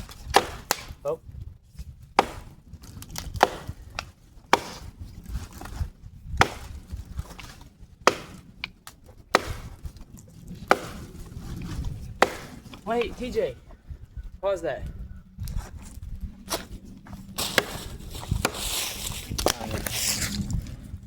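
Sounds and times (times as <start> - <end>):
axe chopping wood: 0.0 - 1.1, 2.2 - 2.6, 3.2 - 4.9, 6.4 - 10.0, 10.6 - 11.1, 12.1 - 13.1, 17.4 - 19.6.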